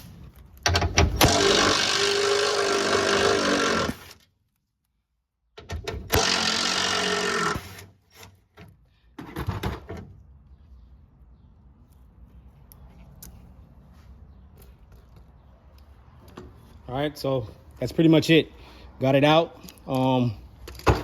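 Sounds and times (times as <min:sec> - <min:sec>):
power driver running: 0:01.2 - 0:04.1, 0:06.0 - 0:07.8.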